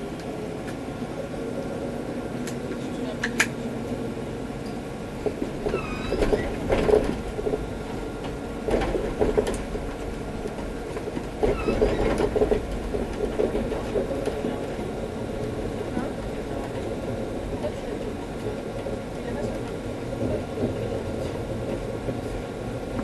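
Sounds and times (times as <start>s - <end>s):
tram running along track: 0.0s - 23.0s
wheel clatter: 5.2s - 22.3s
wheel squeals: 5.6s - 6.7s, 11.4s - 12.4s.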